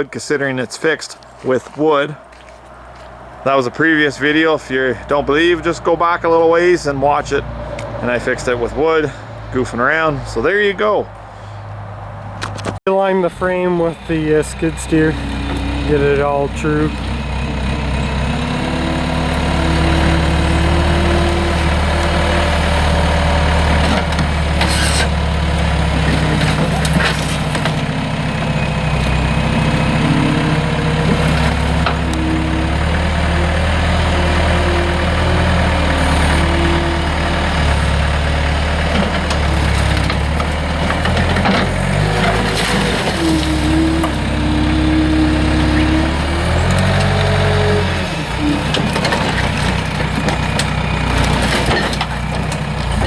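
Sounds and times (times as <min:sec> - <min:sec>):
skid steer engine running: 0:11.1 - 0:53.0.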